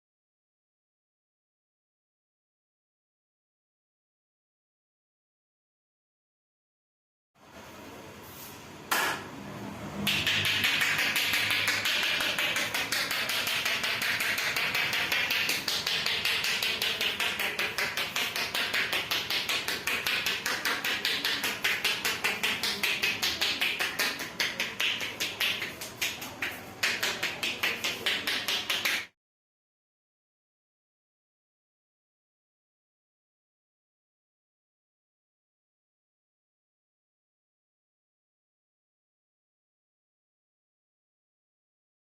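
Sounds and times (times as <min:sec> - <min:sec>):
hands tapping and slapping: 0:10.1 - 0:29.2.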